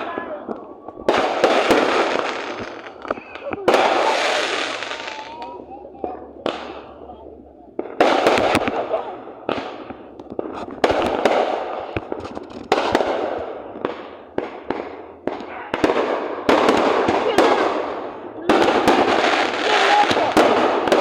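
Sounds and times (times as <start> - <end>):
fireworks bangs and crackle: 0.0 - 21.0.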